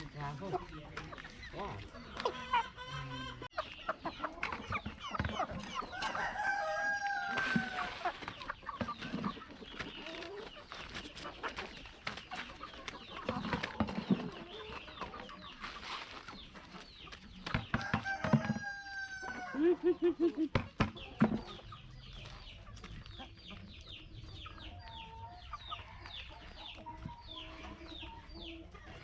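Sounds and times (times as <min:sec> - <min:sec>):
chickens clucking: 0:00.0 - 0:29.0
rooster crowing: 0:05.9 - 0:07.9, 0:17.8 - 0:19.7.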